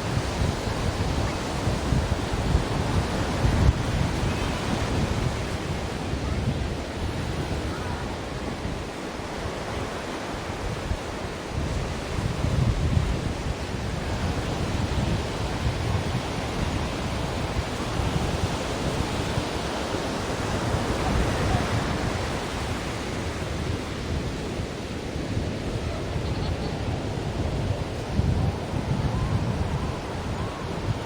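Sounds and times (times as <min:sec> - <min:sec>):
ocean waves breaking: 0:13.3 - 0:31.0.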